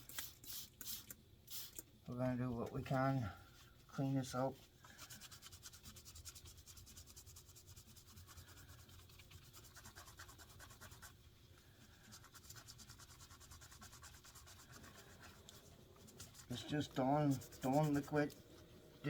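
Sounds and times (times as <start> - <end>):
scratchy scrubbing strokes: 5.0 - 11.2, 11.8 - 19.0.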